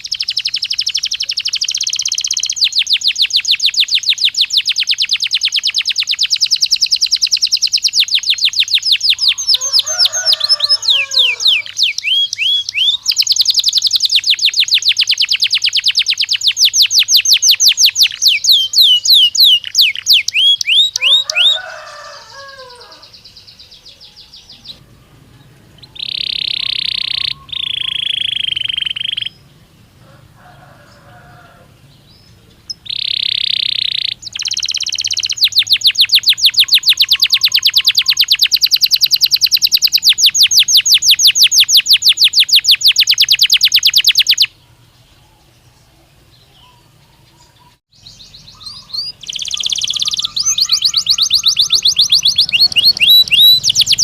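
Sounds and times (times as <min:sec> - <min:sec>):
canary whistled tones: 0:00.0 - 0:21.9, 0:25.8 - 0:29.4, 0:32.7 - 0:44.5, 0:48.5 - 0:54.0
canary chattering notes: 0:00.0 - 0:24.8, 0:25.8 - 0:29.5, 0:32.6 - 0:44.5, 0:48.2 - 0:54.0
canary trilling: 0:00.0 - 0:25.0, 0:25.6 - 0:44.6, 0:48.0 - 0:54.0.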